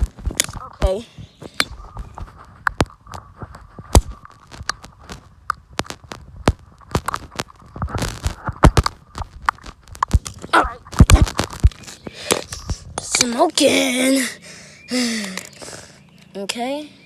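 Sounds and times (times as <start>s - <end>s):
phone being smashed: 3.8s - 12.5s.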